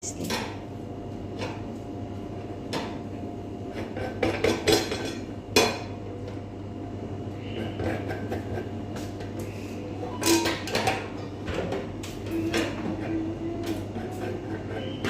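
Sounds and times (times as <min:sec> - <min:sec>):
low steady hum: 0:00.0 - 0:08.7.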